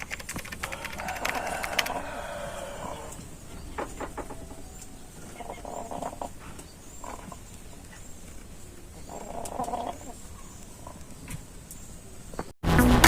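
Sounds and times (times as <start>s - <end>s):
chicken rasping breathing: 0.6s - 3.4s, 5.7s - 7.4s.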